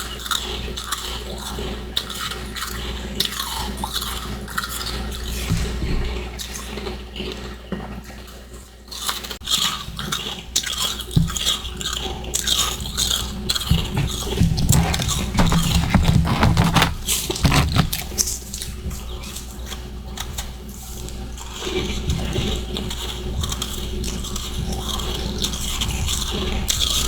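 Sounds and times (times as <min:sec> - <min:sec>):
chewing and crunching ice: 0:08.9 - 0:18.6.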